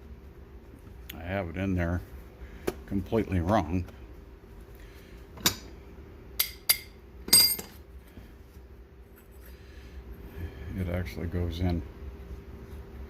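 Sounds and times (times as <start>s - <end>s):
metal parts clinking: 6.4s - 7.8s.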